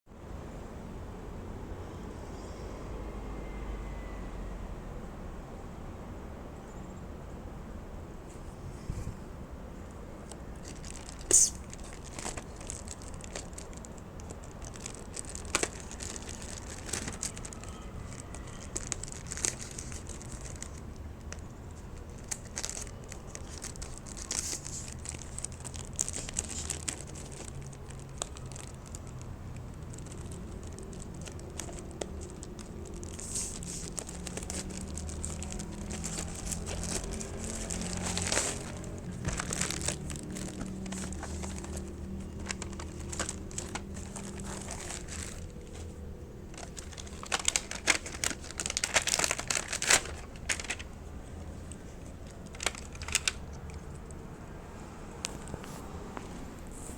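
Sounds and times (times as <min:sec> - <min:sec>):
packaging crinkling and rustling: 0:10.2 - 0:54.2
packaging tearing: 0:10.6 - 0:21.4, 0:22.0 - 0:51.0, 0:52.0 - 0:53.8.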